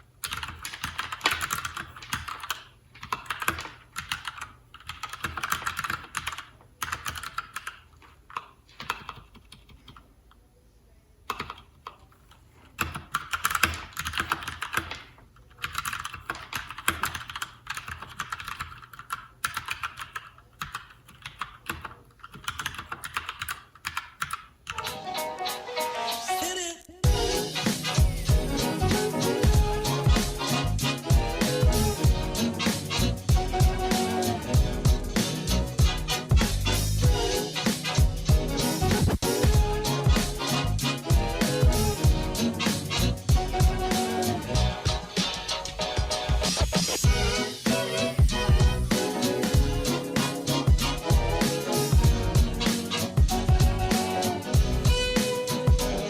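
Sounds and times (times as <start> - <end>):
mechanical keyboard key clacks: 0.2 - 10.0, 11.3 - 24.8
music: 24.7 - 56.0.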